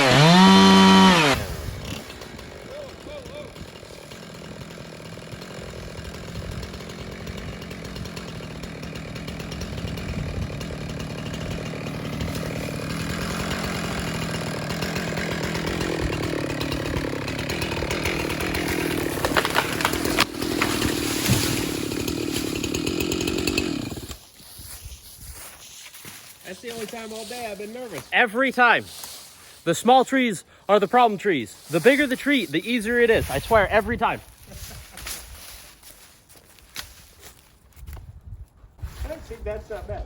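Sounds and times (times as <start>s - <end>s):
wood cracking: 0.0s - 24.3s
chainsaw cutting wood: 0.0s - 24.7s, 26.0s - 38.0s.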